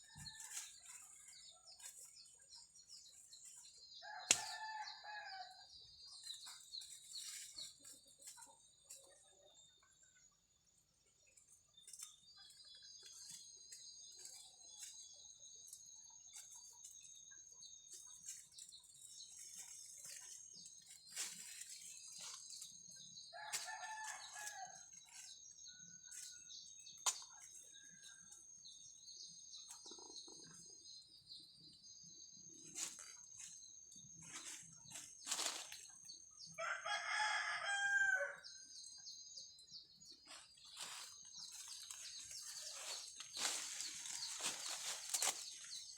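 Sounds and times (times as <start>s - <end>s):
rooster crowing: 4.0s - 5.6s, 36.6s - 38.4s.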